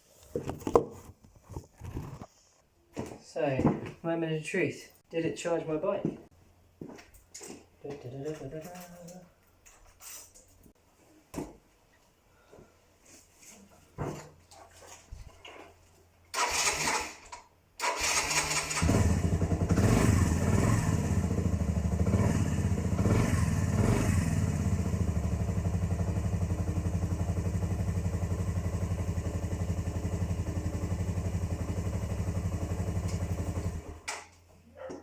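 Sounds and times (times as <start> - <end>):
motorcycle starter motor cranking: 16.3 - 19.5
motorcycle engine revving and idling: 18.0 - 34.0.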